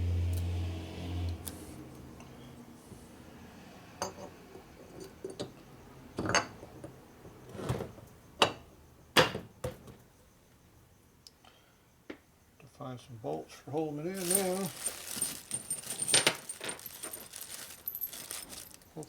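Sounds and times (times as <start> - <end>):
metal parts clinking and knocking: 14.2 - 19.0.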